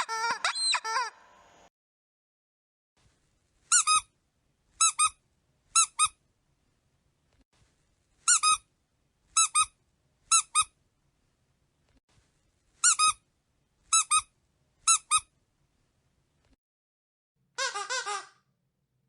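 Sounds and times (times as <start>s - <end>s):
squeaky dog toy squeaking: 0.0s - 1.1s, 3.7s - 4.1s, 4.8s - 6.2s, 8.2s - 8.7s, 9.4s - 10.7s, 12.8s - 13.2s, 13.9s - 15.3s, 17.6s - 18.4s.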